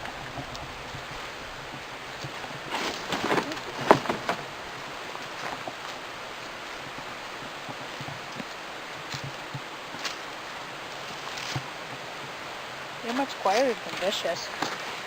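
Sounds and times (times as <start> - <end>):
steady outdoor hiss: 0.0 - 15.0
boards knocking and clattering: 2.7 - 4.5.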